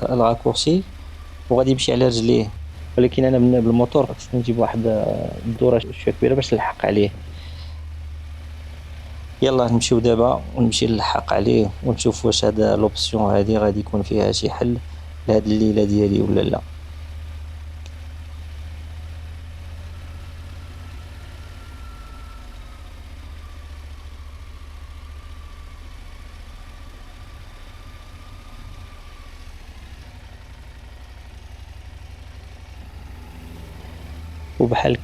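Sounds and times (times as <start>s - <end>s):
motorcycle engine running: 0.0s - 35.0s
faint thin whine: 32.7s - 35.0s.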